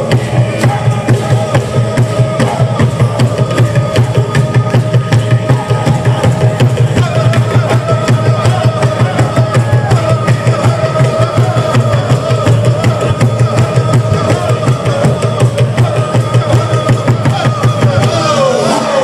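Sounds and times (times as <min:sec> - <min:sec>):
fast even drumming: 0:00.0 - 0:19.0.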